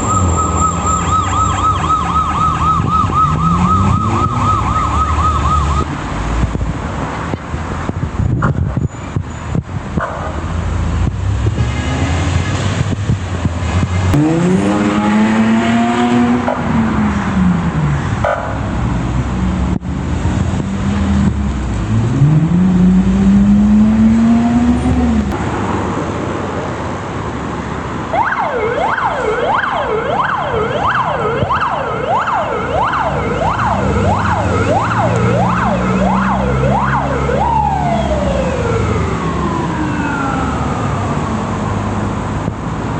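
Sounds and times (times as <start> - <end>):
ambulance siren: 0.0 - 6.0, 28.1 - 42.0
traffic and engine noise: 0.0 - 42.9.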